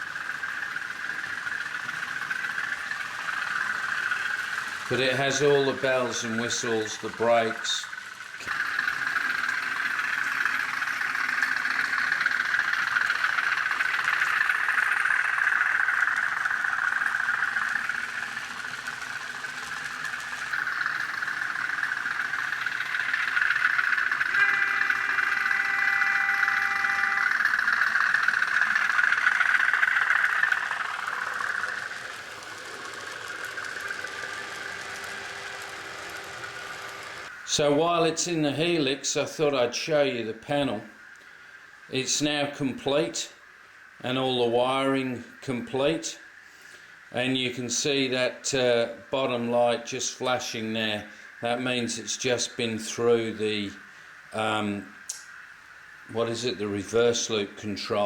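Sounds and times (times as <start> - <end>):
diesel engine sound from small speaker: 0.0 - 41.1
model train horn: 24.2 - 27.7.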